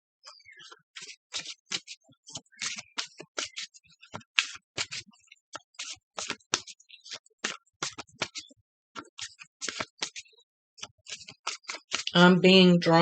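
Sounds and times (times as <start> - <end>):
cards being shuffled: 1.0 - 5.1, 5.8 - 10.2, 10.8 - 12.1.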